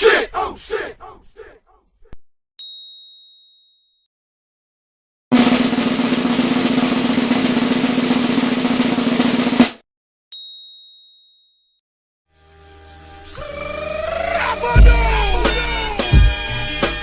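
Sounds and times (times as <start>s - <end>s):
high bell ding: 2.6s - 4.0s, 10.3s - 11.8s
snare drum roll: 5.3s - 9.8s.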